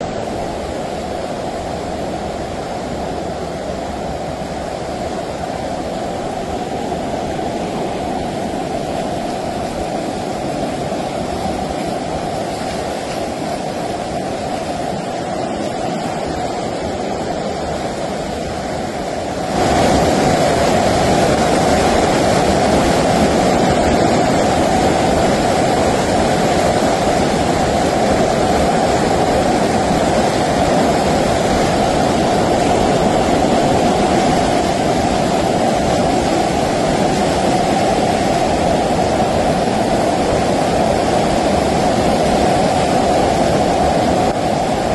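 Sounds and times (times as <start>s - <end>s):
storm water rushing: 0.0s - 44.9s.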